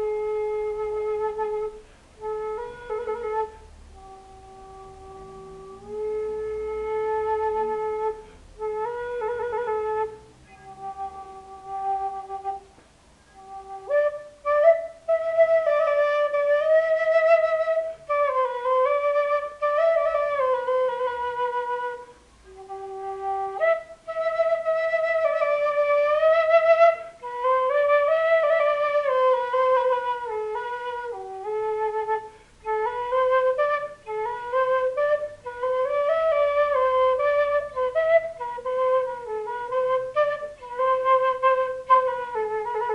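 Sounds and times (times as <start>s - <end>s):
bamboo flute melody: 0.0s - 42.9s.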